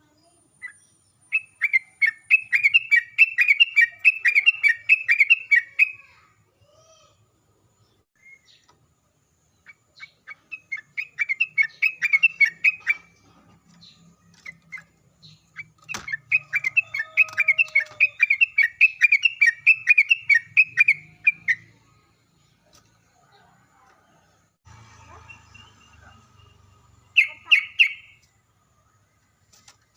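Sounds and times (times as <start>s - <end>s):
bird chattering song: 0.1s - 6.1s, 9.5s - 23.5s, 25.1s - 28.4s.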